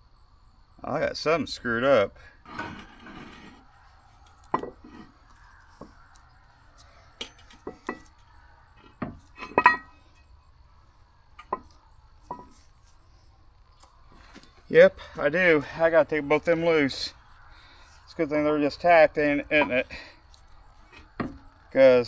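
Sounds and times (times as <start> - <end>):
metal clanks and clinks: 7.2 - 8.1, 8.8 - 10.3, 12.2 - 12.6.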